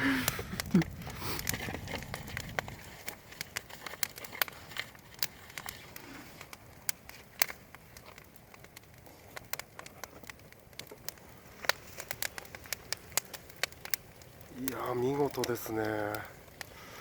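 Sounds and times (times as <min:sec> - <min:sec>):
faint fire hiss: 0:00.0 - 0:17.0
wood fire crackling and popping: 0:00.0 - 0:17.0.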